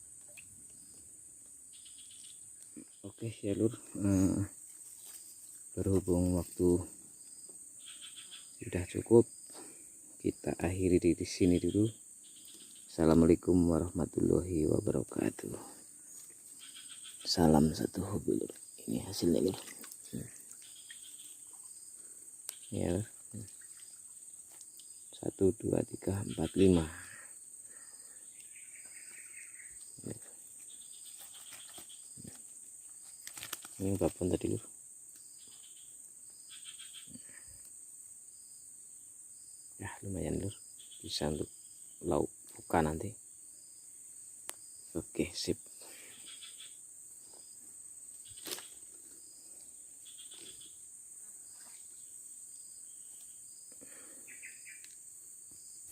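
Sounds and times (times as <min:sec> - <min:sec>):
high-pitched insect chirring: 0:01.7 - 0:09.4, 0:11.2 - 0:37.7, 0:44.5 - 0:53.7
trilling call: 0:54.3 - 0:54.8.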